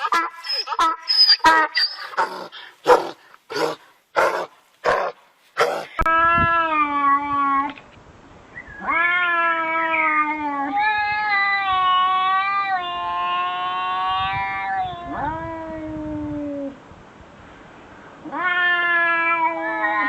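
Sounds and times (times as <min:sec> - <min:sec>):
cat calling: 0:00.0 - 0:05.0, 0:08.8 - 0:16.7, 0:18.2 - 0:20.0.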